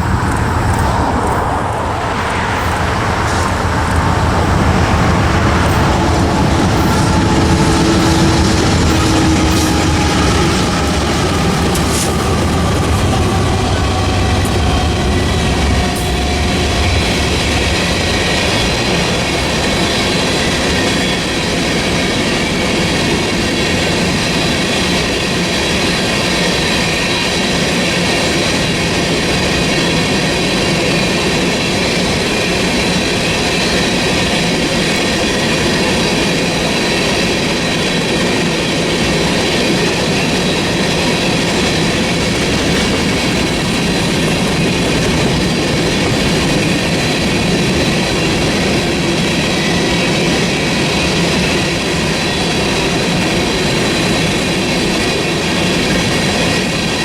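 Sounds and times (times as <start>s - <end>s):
deep low rumble: 0.0s - 19.7s
clacking over rail joints: 0.0s - 22.0s
train wheels rumbling: 0.0s - 57.0s.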